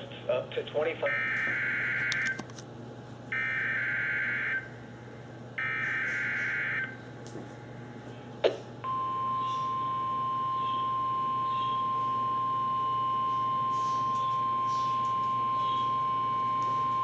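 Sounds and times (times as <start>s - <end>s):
steady single-pitch warning alarm tone: 1.0s - 2.4s, 3.3s - 7.1s, 8.8s - 17.0s.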